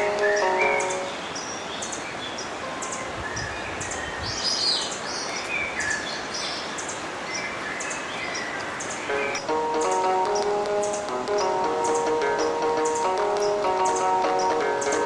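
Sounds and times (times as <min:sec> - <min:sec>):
birds chirping: 0:00.0 - 0:15.0
river water rushing: 0:00.0 - 0:15.0.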